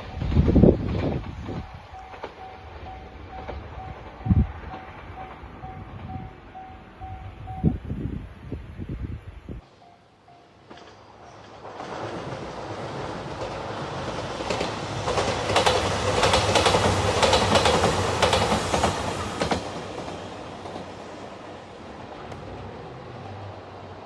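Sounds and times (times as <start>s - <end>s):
diesel train passing: 0.0s - 24.0s
wheels clattering over rail joints: 10.6s - 21.0s.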